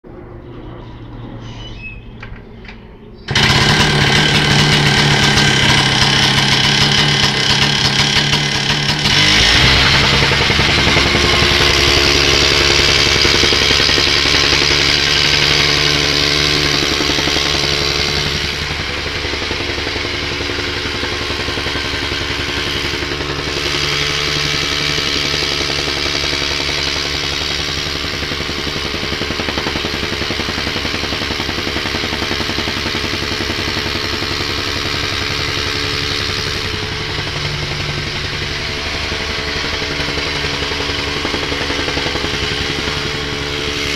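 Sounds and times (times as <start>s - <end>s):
rammer engine running: 0.0s - 43.9s.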